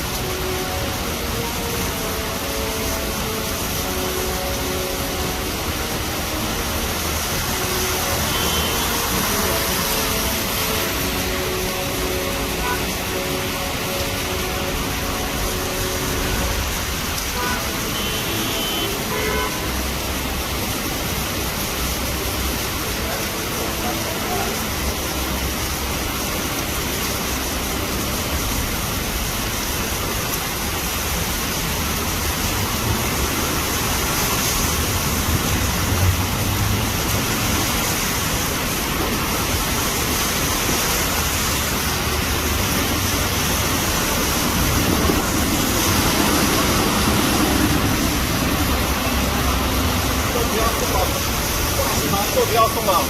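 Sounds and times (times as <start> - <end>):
torrential rain: 0.0 - 53.0.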